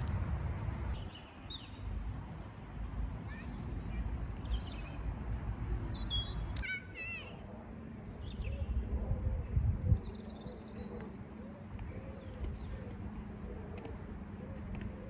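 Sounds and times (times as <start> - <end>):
low rumbling microphone noise: 0.0 - 1.0
small birds chirping: 3.3 - 7.4.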